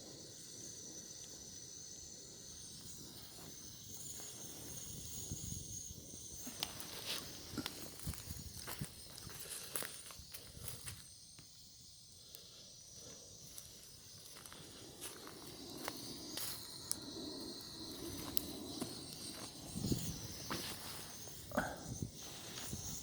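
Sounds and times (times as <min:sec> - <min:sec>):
wood fire crackling: 0:05.7 - 0:23.0.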